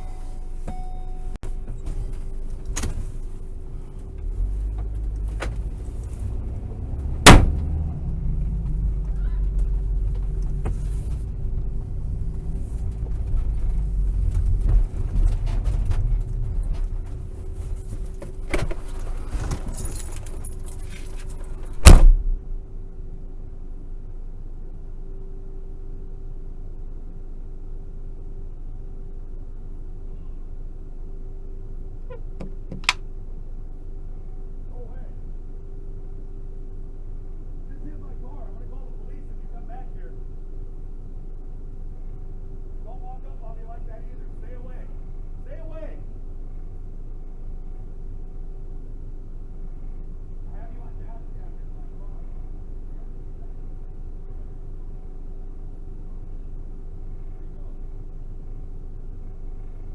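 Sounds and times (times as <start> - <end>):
low rumble: 0.0 - 20.4, 21.4 - 23.5
faint steady hum: 0.0 - 59.9
loud bangs on van body: 7.2 - 7.7, 21.8 - 22.4.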